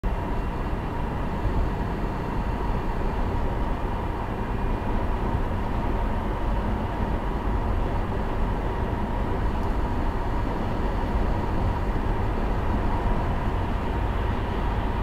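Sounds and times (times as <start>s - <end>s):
faint high whine: 0.1s - 15.0s.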